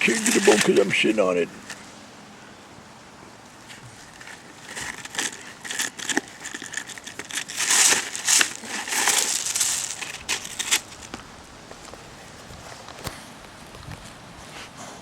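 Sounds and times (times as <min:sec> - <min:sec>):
dog gnawing a bone: 0:03.5 - 0:14.7.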